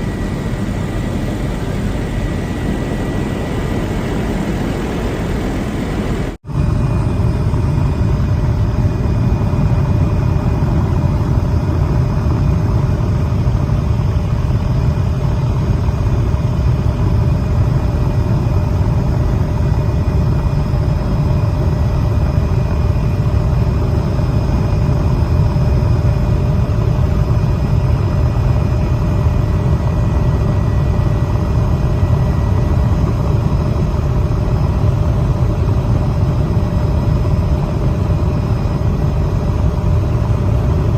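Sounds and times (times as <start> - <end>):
high engine whines: 0.0 - 13.0
aircraft engine drone: 0.0 - 40.9.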